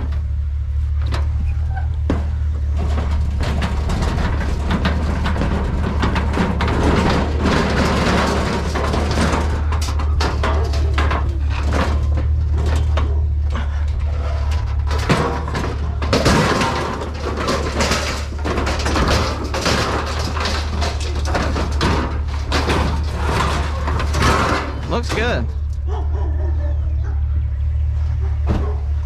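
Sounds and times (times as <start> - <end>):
truck engine drone from cab: 0.0 - 7.6, 24.8 - 29.0
loose things rattling: 0.0 - 26.0.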